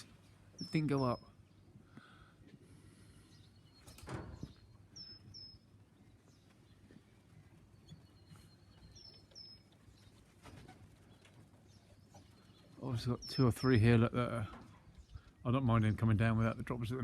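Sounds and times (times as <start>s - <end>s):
small bird chirping: 0.5s - 1.8s, 3.2s - 14.0s.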